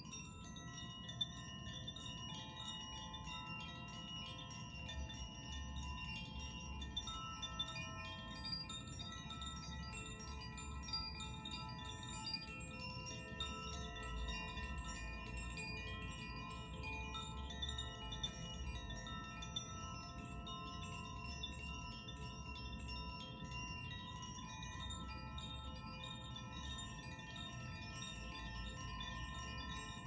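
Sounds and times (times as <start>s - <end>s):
wind chimes tinkling: 0.0s - 30.0s.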